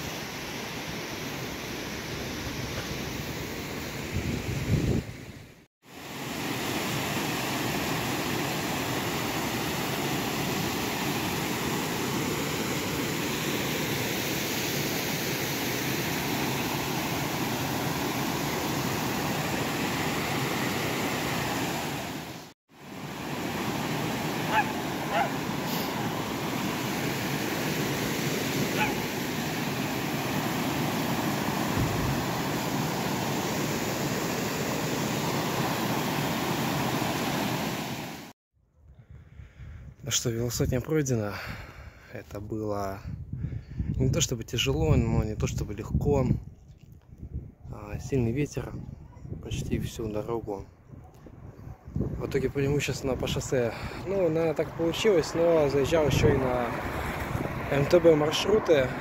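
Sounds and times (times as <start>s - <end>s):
wind noise on microphone: 4.0s - 5.5s, 31.6s - 32.3s, 38.7s - 40.8s, 43.0s - 49.9s, 50.7s - 54.0s, 56.0s - 57.7s.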